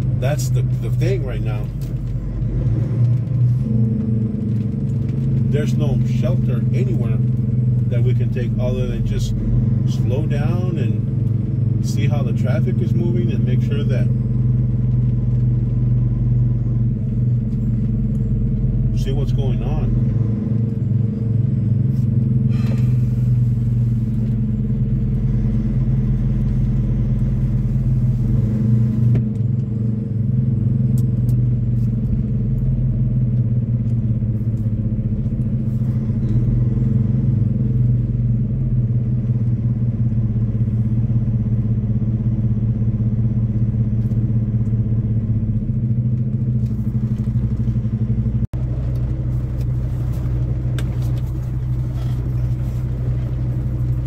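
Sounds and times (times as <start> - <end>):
road noise: 0.0 - 54.0
truck diesel engine drone: 0.0 - 54.0.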